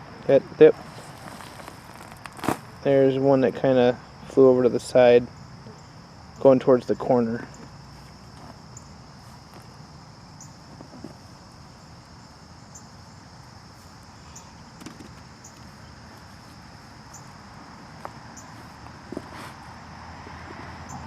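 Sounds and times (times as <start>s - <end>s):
insects trilling: 0.0s - 21.0s
short high insect chirp: 7.5s - 17.5s
faint knocks and rustles: 10.7s - 11.3s.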